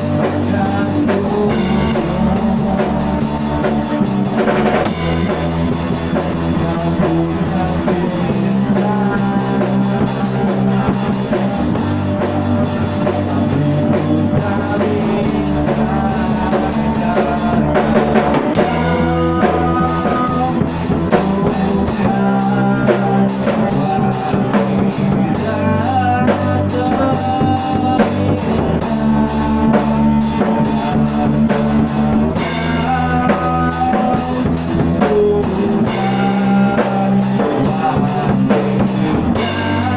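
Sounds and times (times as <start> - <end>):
instrumental rock band music: 0.0 - 39.9.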